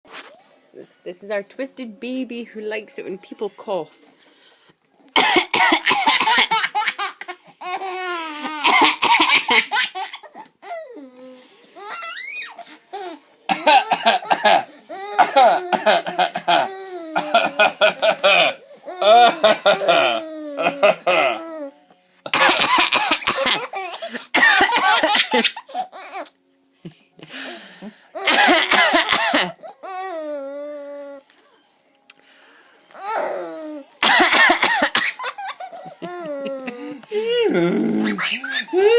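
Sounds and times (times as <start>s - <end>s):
person coughing: 5.2s - 6.6s, 8.6s - 9.6s, 17.2s - 21.4s, 22.3s - 25.7s, 28.2s - 29.6s, 34.0s - 36.8s
baby laughing: 5.9s - 10.5s, 34.0s - 37.0s, 38.0s - 38.9s
baby squealing: 10.2s - 13.2s.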